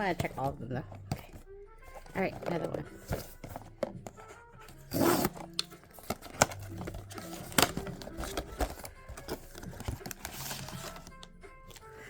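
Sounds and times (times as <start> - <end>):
cardboard and plastic clicks: 2.0 - 12.0
packaging tearing: 4.8 - 11.9.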